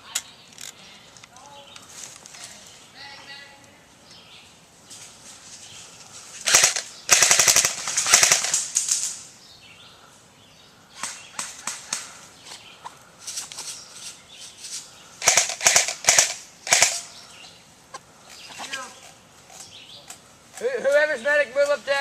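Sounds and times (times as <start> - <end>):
airsoft guns firing full-auto: 6.4 - 9.0, 15.2 - 17.1.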